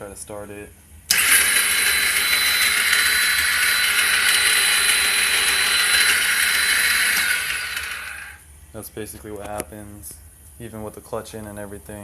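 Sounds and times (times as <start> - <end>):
motorcycle starter whirring: 1.1 - 8.4.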